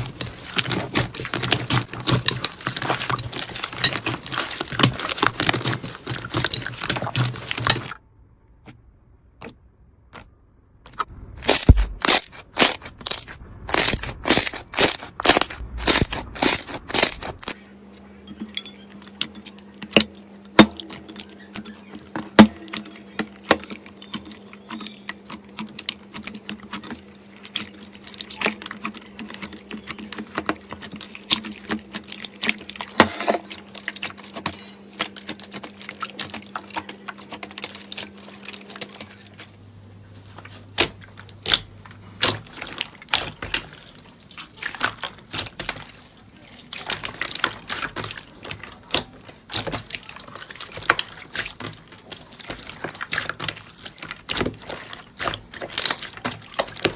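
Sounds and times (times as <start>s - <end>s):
quick regular crunches: 9.4s - 17.6s.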